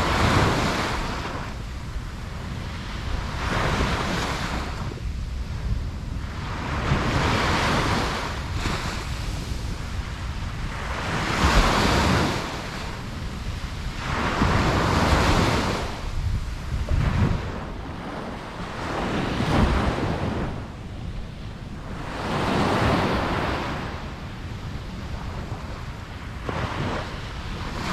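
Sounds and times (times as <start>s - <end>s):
waves washing on a beach: 0.0s - 27.9s
steady low rumble: 15.8s - 26.4s.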